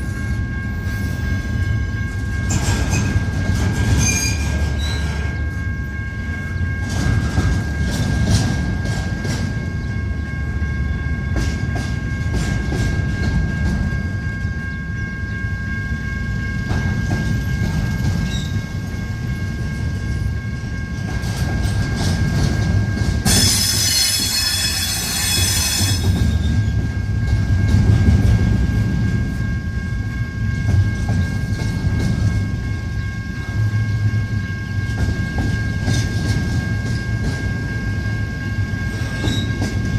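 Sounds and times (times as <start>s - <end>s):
freight train rumbling past: 0.0s - 39.9s
wheel squeal: 2.5s - 5.5s, 17.8s - 18.8s, 23.2s - 26.9s, 38.9s - 39.9s
high-pitched flange squeal: 4.0s - 5.6s, 23.2s - 26.8s.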